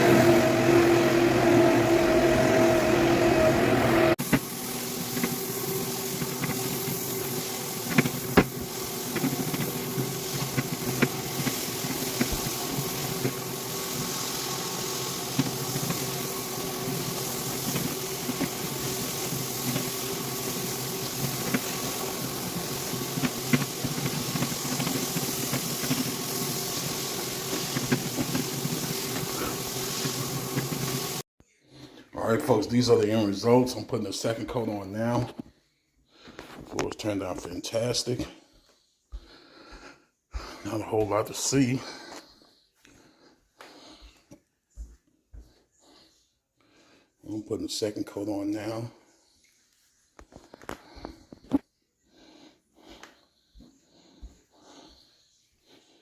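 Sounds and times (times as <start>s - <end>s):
floor machine motor hum: 0.0s - 31.2s.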